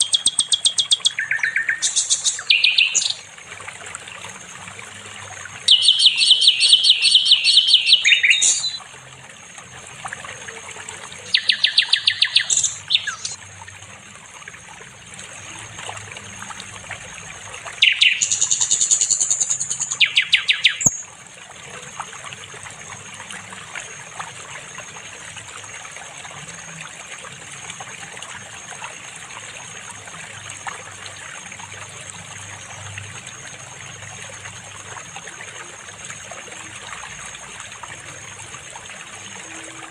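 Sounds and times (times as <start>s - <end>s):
bird singing rapid high notes: 0.0s - 3.2s, 5.7s - 8.8s, 11.4s - 13.4s.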